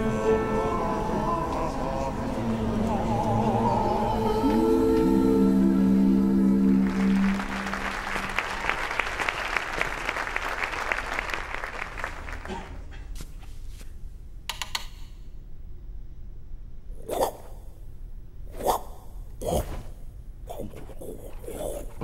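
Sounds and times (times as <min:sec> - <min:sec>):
dense clapping: 0:06.8 - 0:12.9
sharp clicks: 0:14.5 - 0:15.2.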